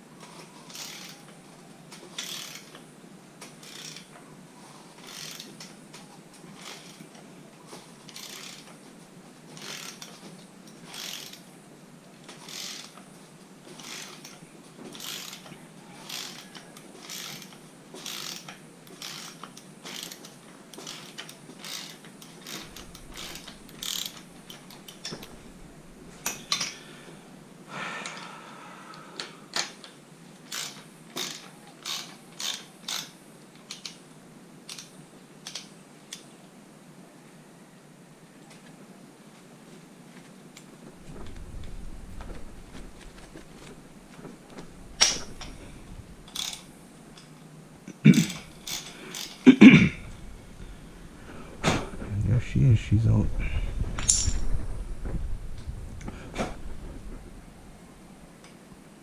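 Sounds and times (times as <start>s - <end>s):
ratchet clicking: 0.7s - 1.2s, 2.1s - 2.8s, 3.4s - 4.1s, 5.0s - 5.7s, 6.6s - 7.0s, 8.1s - 8.7s, 9.6s - 10.1s, 10.8s - 11.5s, 12.4s - 13.0s, 13.8s - 25.3s, 30.5s - 34.0s, 46.3s - 47.3s, 48.5s - 49.4s.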